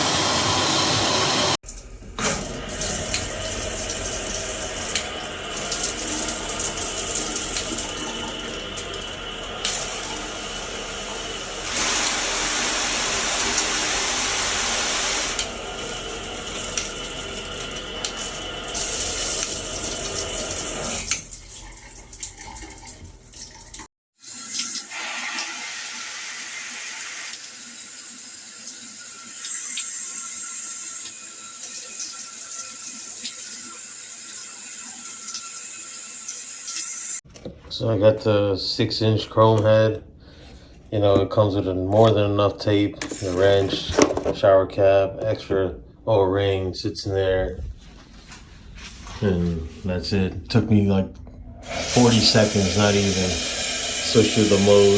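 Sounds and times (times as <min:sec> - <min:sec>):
shower head spraying water: 0:00.0 - 0:01.6, 0:02.5 - 0:21.7, 0:24.3 - 0:37.2, 0:51.6 - 0:54.9.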